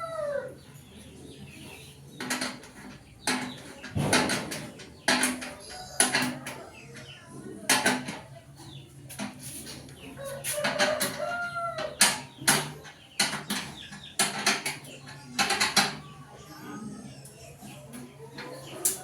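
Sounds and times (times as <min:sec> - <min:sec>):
chicken clucking: 0:00.0 - 0:19.0
metallic knocks and clanks: 0:02.2 - 0:06.6, 0:10.6 - 0:16.1.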